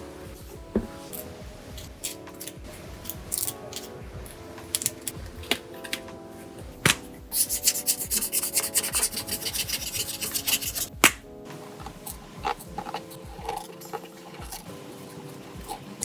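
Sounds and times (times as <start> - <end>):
soft background music: 0.0 - 16.0
paper rubbing and rustling: 6.9 - 10.9.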